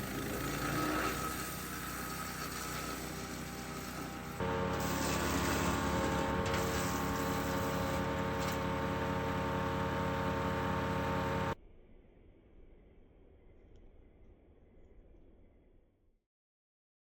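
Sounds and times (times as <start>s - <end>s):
wood chipper engine running: 0.0s - 11.6s.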